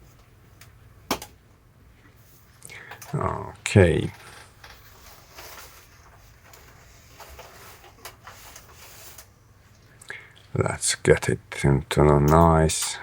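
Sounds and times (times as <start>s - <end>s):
faint handling clicks and rustles: 1.9s - 10.6s.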